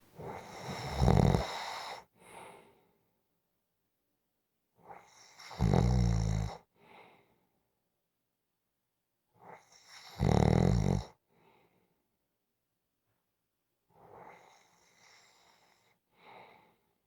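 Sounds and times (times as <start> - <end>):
person snoring: 0.2 - 1.9.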